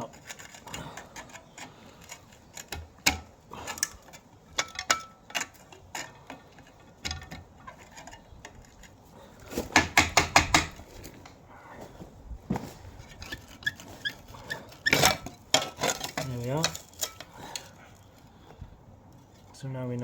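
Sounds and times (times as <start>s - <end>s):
metal clinks and knocks of tools: 0.0s - 9.0s, 13.1s - 18.2s.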